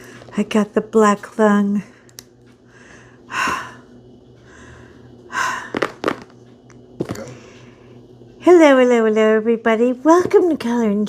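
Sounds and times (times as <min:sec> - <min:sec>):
woman breathing heavily: 0:02.6 - 0:06.3.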